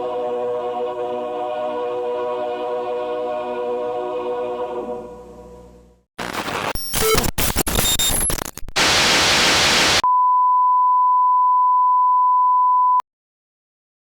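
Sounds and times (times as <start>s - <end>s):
glitching broadcast noise: 6.2s - 10.0s
white-noise static: 6.2s - 10.0s.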